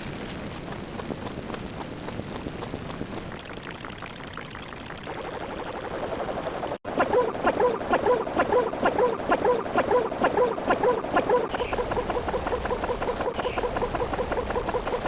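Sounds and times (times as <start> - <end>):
animal-like squeaky calls: 11.2 - 15.0.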